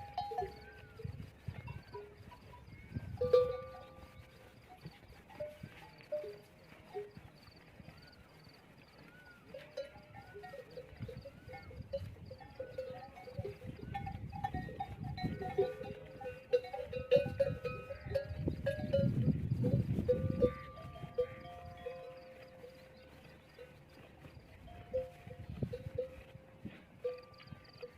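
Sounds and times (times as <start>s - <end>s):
camel bells clanking: 0.0s - 27.9s
low shuffling noise: 0.8s - 9.8s, 18.6s - 27.8s.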